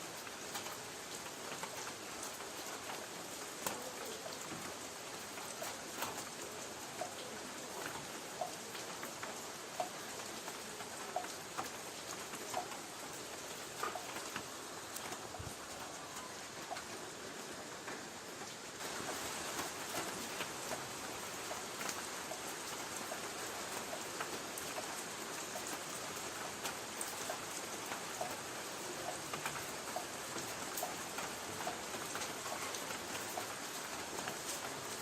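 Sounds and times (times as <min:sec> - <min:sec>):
rain on a tin roof: 0:00.0 - 0:35.0.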